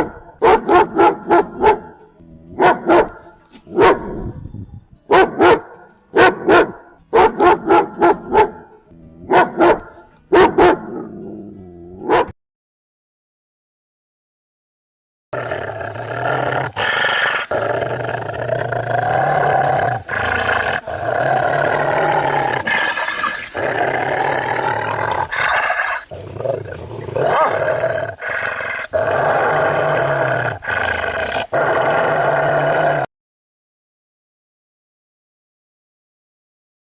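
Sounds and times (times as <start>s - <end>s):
dog growling: 15.4s - 33.1s.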